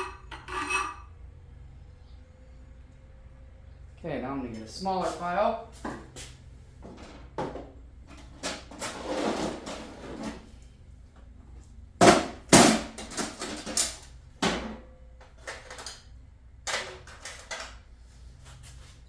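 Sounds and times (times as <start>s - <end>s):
metal tools clinking and knocking: 0.0s - 1.1s
tool scraping: 0.0s - 1.1s.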